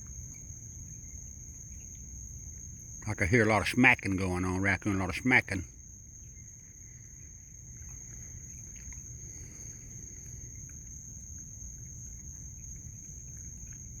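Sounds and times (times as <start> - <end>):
night insects droning: 0.0 - 14.0.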